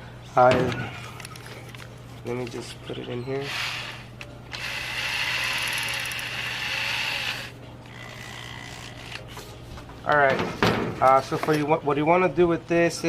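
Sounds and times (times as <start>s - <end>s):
power drill motor whine: 3.4s - 9.2s.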